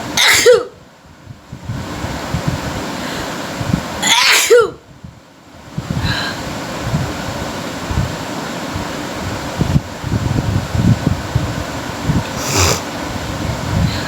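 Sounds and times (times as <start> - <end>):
person sneezing: 12.3 - 12.8.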